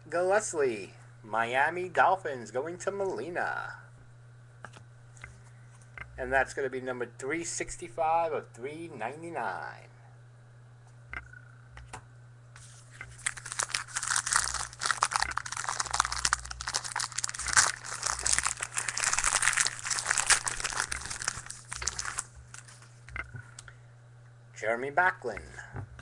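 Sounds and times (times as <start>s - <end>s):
wrapper crinkling: 12.6s - 23.1s.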